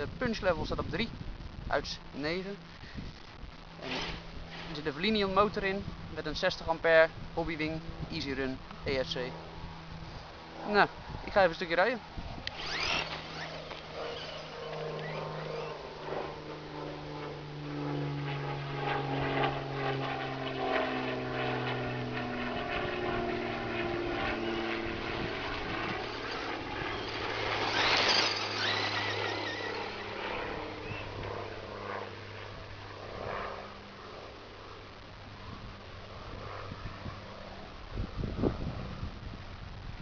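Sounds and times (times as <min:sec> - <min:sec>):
rc truck motor whining: 0:12.4 - 0:15.9, 0:25.6 - 0:31.2.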